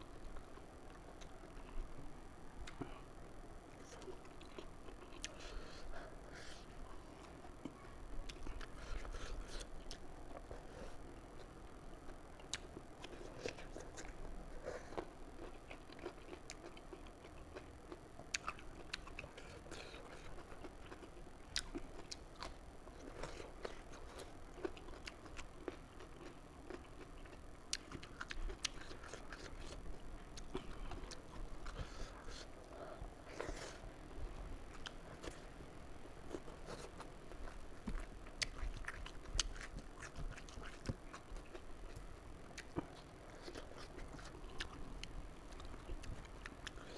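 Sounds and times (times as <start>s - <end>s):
chewing and mouth smacks: 15.0s - 32.5s, 36.3s - 46.9s.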